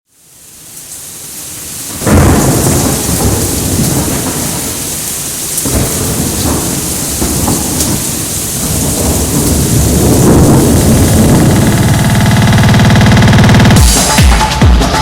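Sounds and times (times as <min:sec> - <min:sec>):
steady rain: 0:00.1 - 0:13.8
thunder rumbling: 0:01.9 - 0:13.8.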